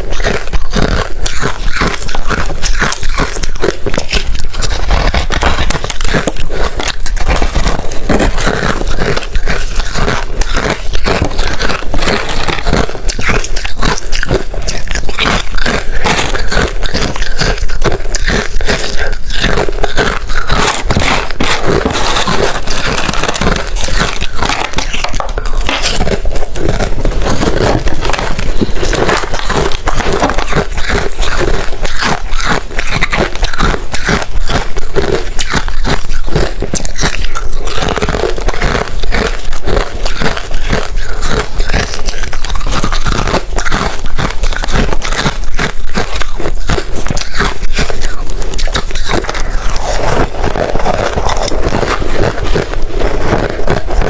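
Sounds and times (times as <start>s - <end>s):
person chewing ice: 0.0s - 54.0s.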